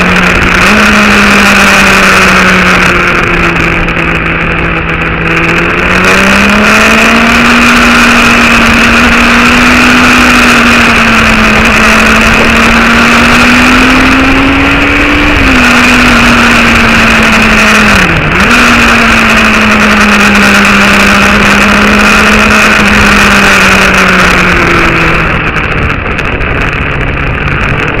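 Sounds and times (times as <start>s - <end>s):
loud rushing wind: 0.0s - 28.0s
motorcycle engine running: 0.0s - 28.0s.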